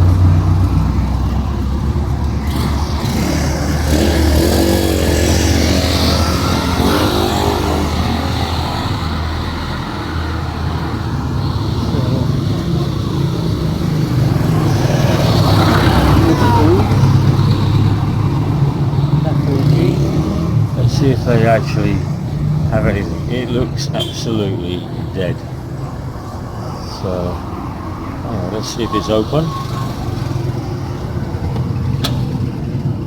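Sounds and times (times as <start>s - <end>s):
vehicle engine droning: 0.0s - 33.0s.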